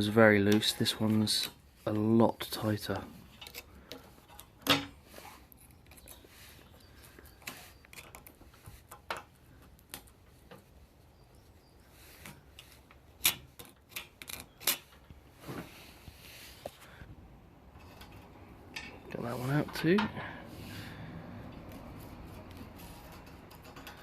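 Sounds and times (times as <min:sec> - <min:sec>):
hand tool clicking and scraping metal: 0:00.0 - 0:01.6, 0:03.2 - 0:10.6, 0:12.2 - 0:15.1, 0:21.6 - 0:24.0.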